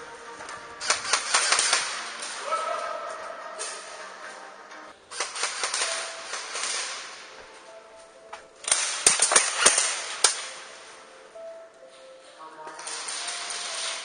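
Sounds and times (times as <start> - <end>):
airsoft guns firing: 0.8 - 2.9, 5.1 - 7.4, 8.6 - 10.8, 12.8 - 14.0.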